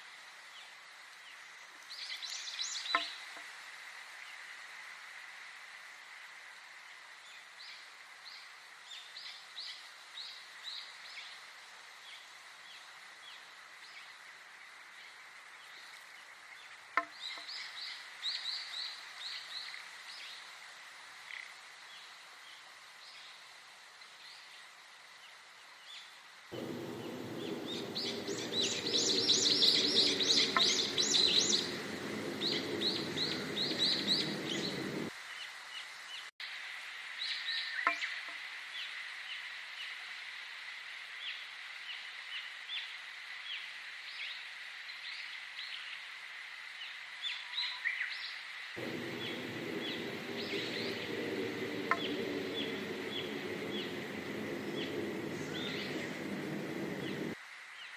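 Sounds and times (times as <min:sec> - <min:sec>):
low drone: 0:26.6 - 0:35.1, 0:48.8 - 0:57.4
small birds chirping: 0:26.6 - 0:35.1, 0:48.8 - 0:57.4.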